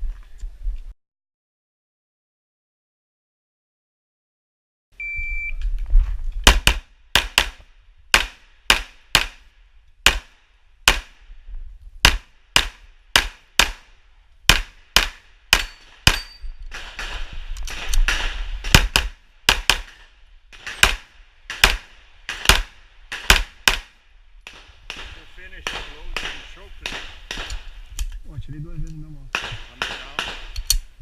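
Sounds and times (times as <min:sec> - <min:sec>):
pistol shots: 0:06.4 - 0:09.4, 0:10.0 - 0:11.2, 0:12.0 - 0:27.8, 0:29.3 - 0:30.8.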